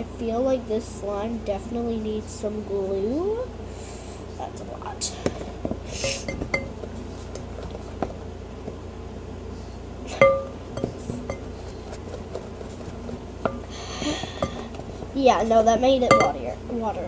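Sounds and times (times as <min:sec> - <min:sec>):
sharp ringing clink: 0:10.2 - 0:10.6
utensil scraping a bowl: 0:10.2 - 0:15.7.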